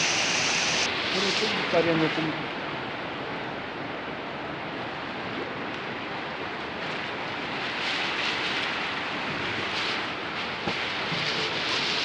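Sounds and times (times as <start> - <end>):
very heavy rain pouring: 0.0 - 7.7.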